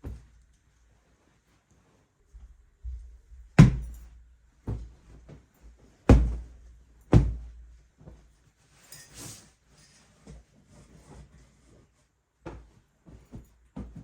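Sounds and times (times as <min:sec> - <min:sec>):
dull thumps indoors: 0:00.0 - 0:00.4, 0:02.3 - 0:08.2, 0:12.4 - 0:14.0.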